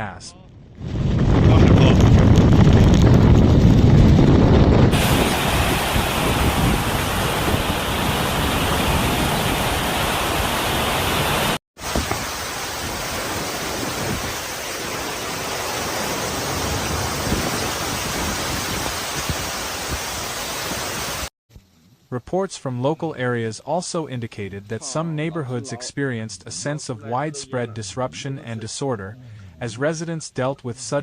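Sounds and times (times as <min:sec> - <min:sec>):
wind: 0:00.0 - 0:30.6
heavy rain: 0:04.9 - 0:21.3.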